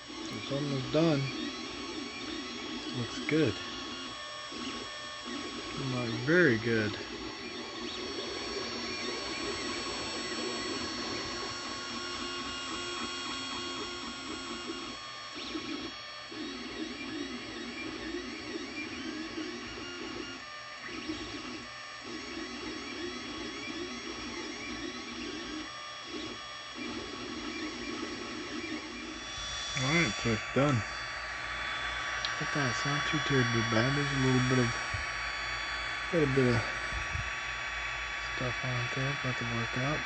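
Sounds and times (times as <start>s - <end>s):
stepper motors whirring: 0.0s - 40.0s
steady high tones: 5.1s - 15.0s, 27.6s - 40.0s.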